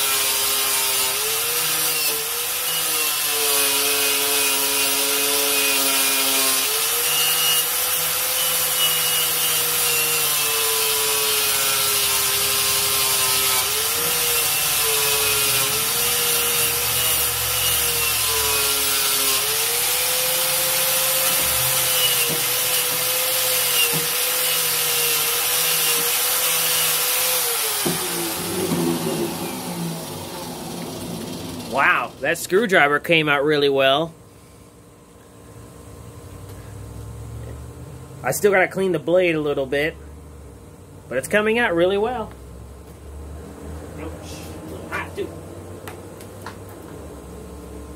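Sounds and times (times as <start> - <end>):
power tool grinding metal blade: 0.0 - 32.7.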